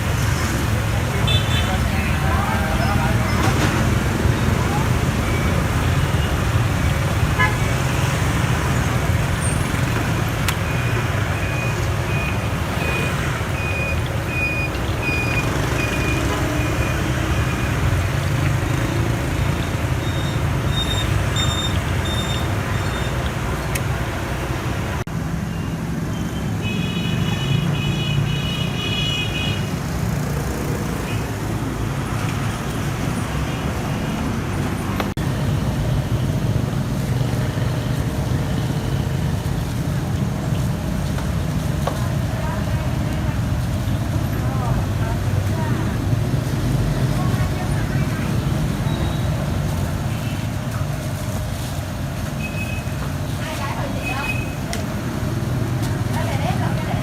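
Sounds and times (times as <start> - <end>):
street traffic noise: 0.0 - 57.0
car horn: 7.4 - 7.8
short electronic beeps: 10.7 - 17.8.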